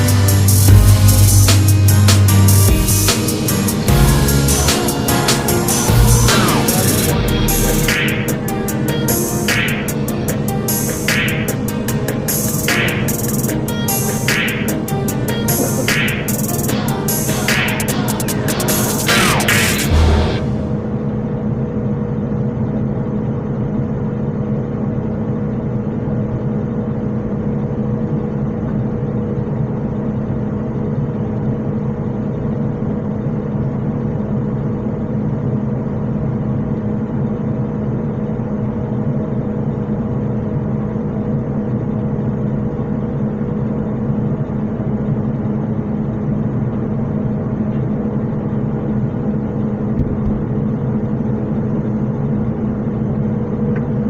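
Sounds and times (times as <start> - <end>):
combine harvester engine drone: 0.0 - 54.0.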